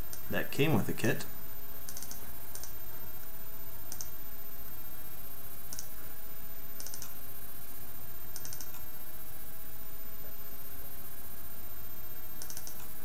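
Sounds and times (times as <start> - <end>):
steady background hiss: 0.0 - 13.0
computer mouse clicks: 1.9 - 2.8, 3.9 - 4.2, 5.7 - 6.0, 6.8 - 7.2, 8.3 - 8.9, 12.4 - 12.9.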